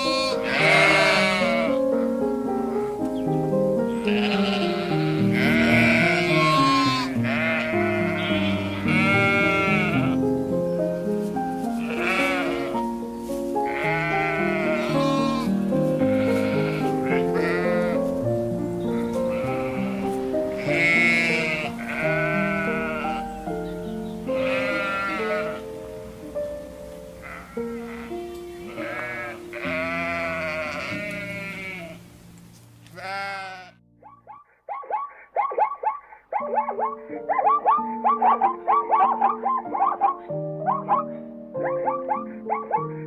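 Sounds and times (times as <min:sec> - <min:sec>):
sheep bleating: 0:00.0 - 0:01.8, 0:04.0 - 0:10.3, 0:11.8 - 0:12.9, 0:13.6 - 0:18.1, 0:18.8 - 0:23.3, 0:24.2 - 0:25.7, 0:27.2 - 0:32.0, 0:32.9 - 0:33.8
background music held notes: 0:00.0 - 0:34.1, 0:36.4 - 0:43.0.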